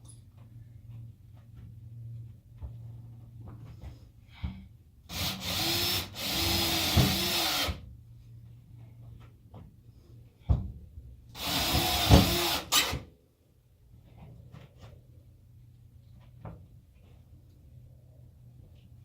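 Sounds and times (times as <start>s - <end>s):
power drill driving screws: 5.1s - 7.8s, 11.4s - 13.0s.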